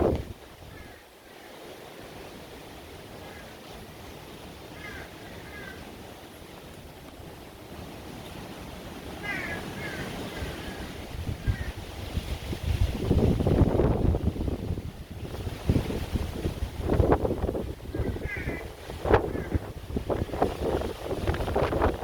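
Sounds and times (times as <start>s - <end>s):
wind rushing: 0.0s - 0.4s, 10.4s - 22.0s
surf: 0.0s - 22.0s.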